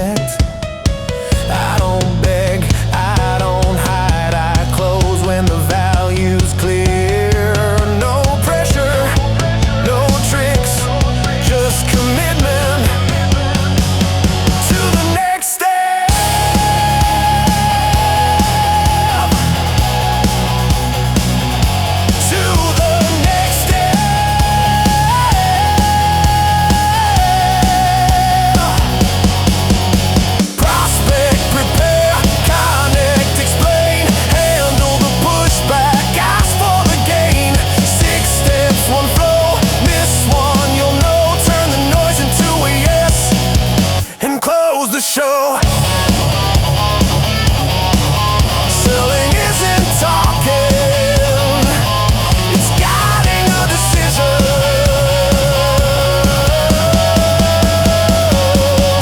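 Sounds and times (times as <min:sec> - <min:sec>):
instrumental rock music: 0:00.0 - 0:44.3, 0:45.6 - 0:59.0.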